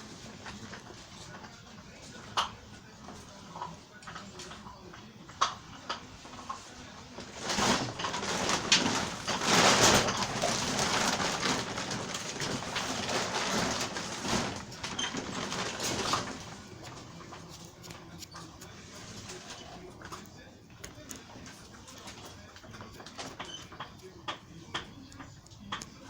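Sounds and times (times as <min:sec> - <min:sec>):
wind rustling plants: 0:07.1 - 0:20.2.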